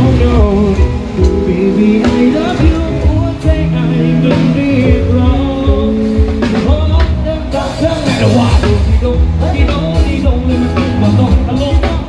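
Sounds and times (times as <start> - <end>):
drum kit hits: 0.0 - 12.0
held keyboard or guitar notes: 0.0 - 12.0
person singing: 0.0 - 12.0.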